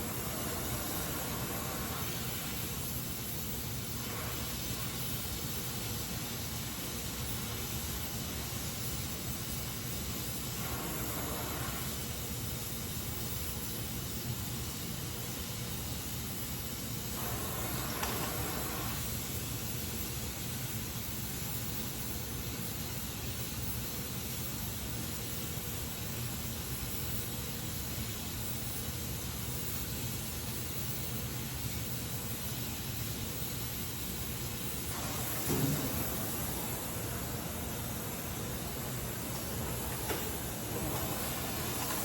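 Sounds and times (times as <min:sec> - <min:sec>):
welding torch flame hissing: 0:00.0 - 0:26.0, 0:26.6 - 0:42.0.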